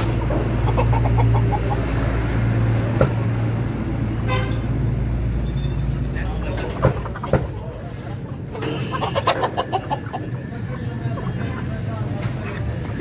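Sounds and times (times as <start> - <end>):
chickens clucking: 0.0 - 3.7, 5.8 - 13.0.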